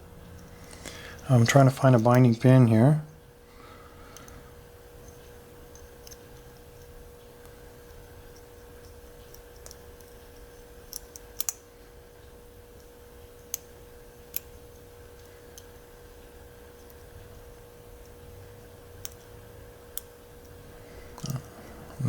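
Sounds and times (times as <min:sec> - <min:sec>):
faint steady hum: 0:00.0 - 0:22.0
metallic clicks of lock picking: 0:10.9 - 0:11.6, 0:14.3 - 0:14.6.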